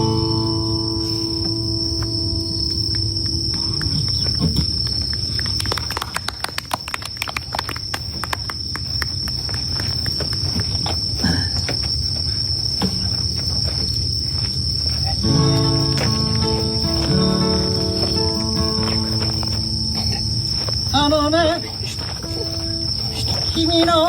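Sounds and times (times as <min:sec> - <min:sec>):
night insects trilling: 0:00.0 - 0:24.0
campfire crackling and popping: 0:15.2 - 0:24.0.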